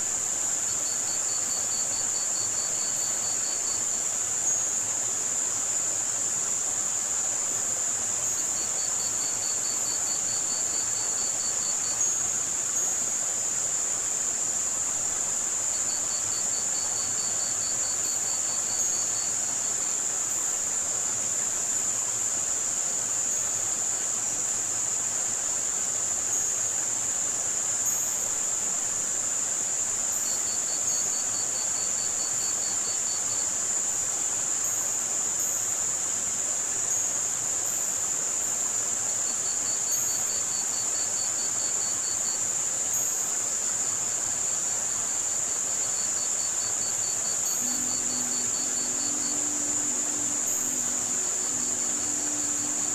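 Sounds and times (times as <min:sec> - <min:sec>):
cricket trill: 0:00.0 - 0:52.9
high-pitched hiss: 0:00.0 - 0:52.9
tiny high chirps: 0:38.5 - 0:52.9
rushing water: 0:47.4 - 0:52.9.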